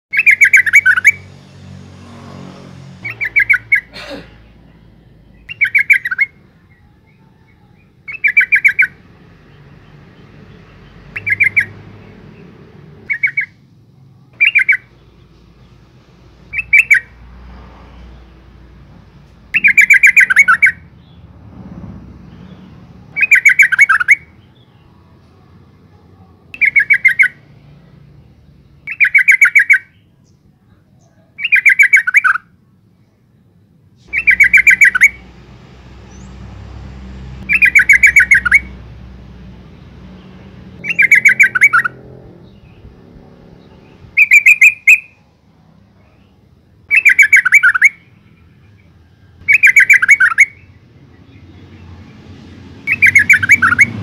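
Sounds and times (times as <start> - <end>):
bulbul chattering call: 8.1 - 9.0, 11.1 - 11.8, 13.1 - 13.6, 14.4 - 15.0, 19.5 - 21.1, 26.6 - 27.4, 28.9 - 30.0, 34.1 - 35.3, 37.4 - 38.8, 40.8 - 42.8, 44.2 - 45.2, 46.9 - 48.2, 49.4 - 50.7, 52.9 - 54.0.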